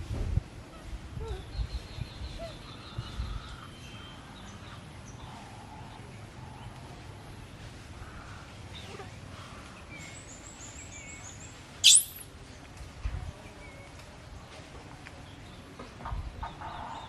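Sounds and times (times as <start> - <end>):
shrill rising animal call: 11.8 - 12.2
faint high chirping: 11.8 - 12.3.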